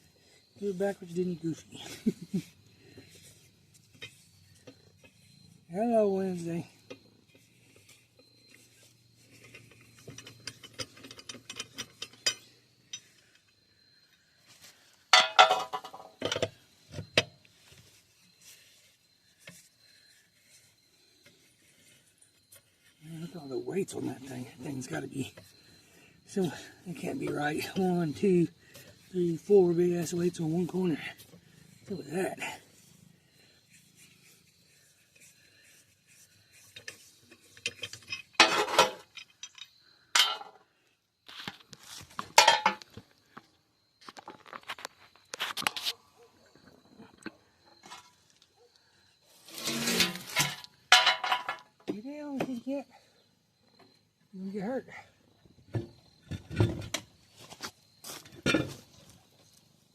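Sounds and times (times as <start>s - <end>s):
metal clinking and rattling: 8.5s - 13.3s, 15.1s - 16.5s, 36.6s - 40.6s, 42.2s - 42.8s, 49.5s - 51.7s.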